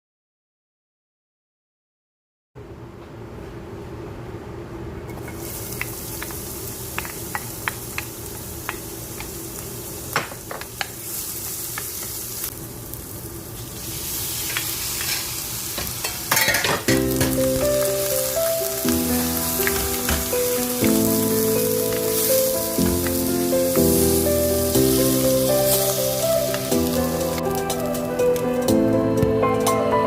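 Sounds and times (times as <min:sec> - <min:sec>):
food sizzling in oil: 0:05.2 - 0:28.6
background music: 0:16.9 - 0:30.0.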